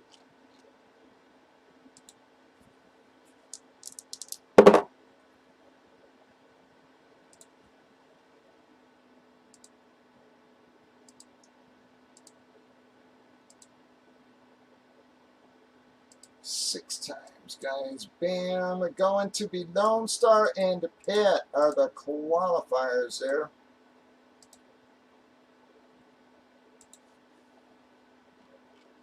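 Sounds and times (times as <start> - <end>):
steady low hum: 0.0 - 29.0
loud dull thump: 4.6 - 4.9
faint ticks: 12.2 - 12.4, 13.5 - 13.8, 26.8 - 27.1.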